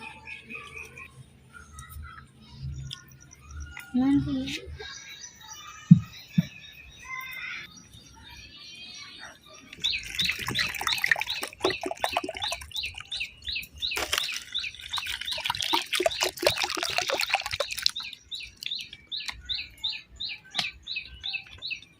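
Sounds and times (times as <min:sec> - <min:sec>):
birds chirping: 0:00.0 - 0:21.9.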